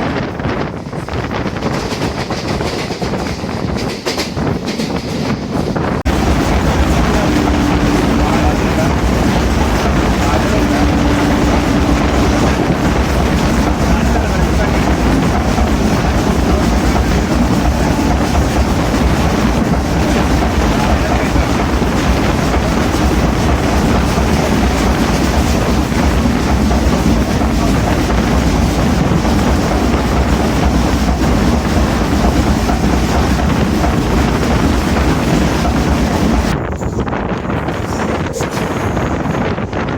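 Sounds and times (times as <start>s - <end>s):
train rumbling on track: 0.0s - 39.9s
wind noise: 0.0s - 39.9s.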